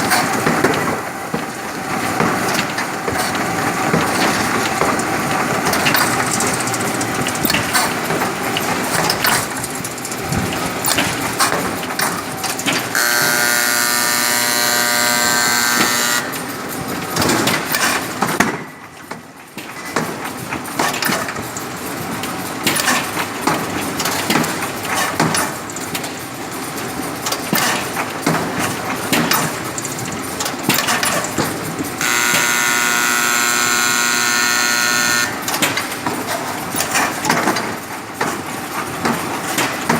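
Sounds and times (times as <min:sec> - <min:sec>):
machine clattering with rapid clicks: 0:00.0 - 0:13.0, 0:15.6 - 0:39.9
steady buzzer tone: 0:12.9 - 0:16.5, 0:32.0 - 0:35.5.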